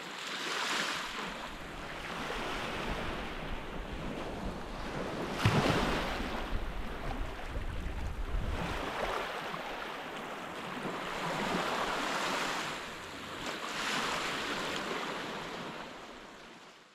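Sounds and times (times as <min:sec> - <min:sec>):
sea waves breaking on beach: 0:00.0 - 0:16.8
wind rumbling on microphone: 0:01.2 - 0:09.3.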